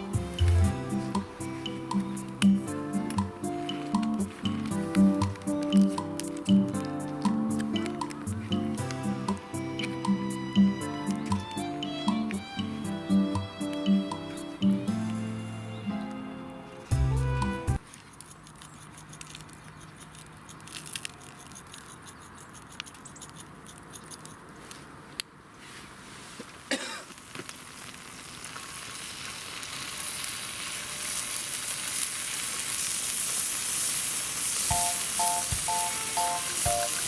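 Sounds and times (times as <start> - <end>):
sharp crackles: 0.0 - 10.4, 17.8 - 24.9, 25.6 - 37.0
food sizzling in a hot pan: 27.2 - 37.0.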